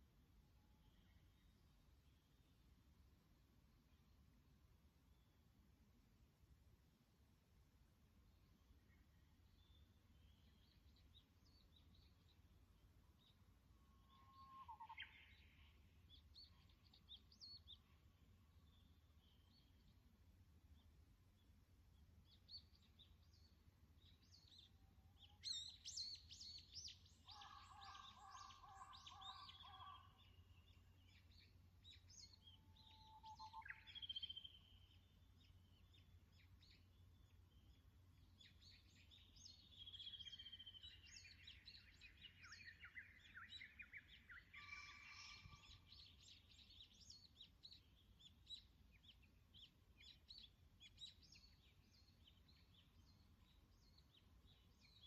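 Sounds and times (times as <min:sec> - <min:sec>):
wild birds singing and calling: 0:13.2 - 0:19.9, 0:22.3 - 0:55.0.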